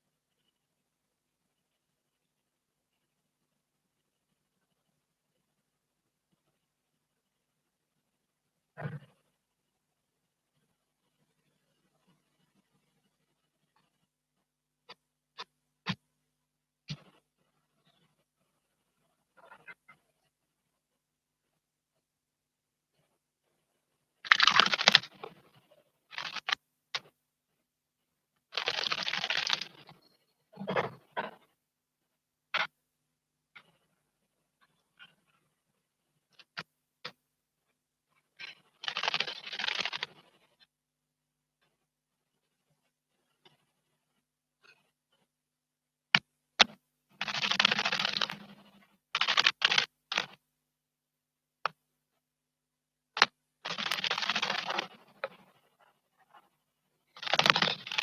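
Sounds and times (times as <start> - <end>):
sharp clicks: 24.2 - 25.4, 26.1 - 27.1, 28.5 - 30.0, 38.4 - 40.2, 46.2 - 50.4, 53.2 - 55.4, 57.1 - 58.0.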